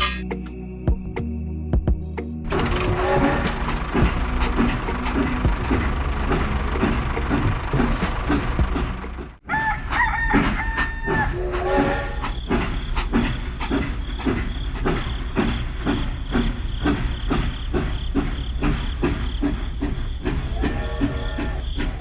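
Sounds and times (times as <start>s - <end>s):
rhythmic chugging: 2.1s - 9.4s, 10.3s - 22.0s
crowing call: 20.4s - 22.0s.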